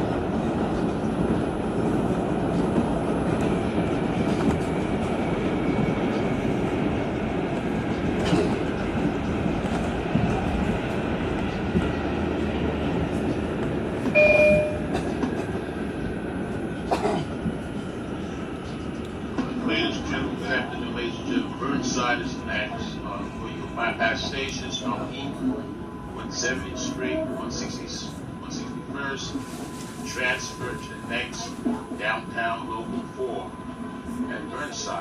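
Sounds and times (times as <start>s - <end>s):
train wheels rumbling on rail: 0.0s - 35.0s
loud high beep: 14.2s - 14.9s.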